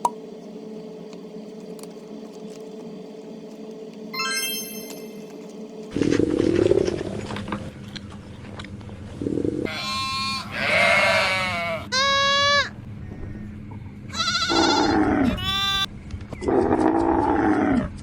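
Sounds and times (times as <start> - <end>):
sheep bleating: 9.7 - 12.7, 14.1 - 15.9.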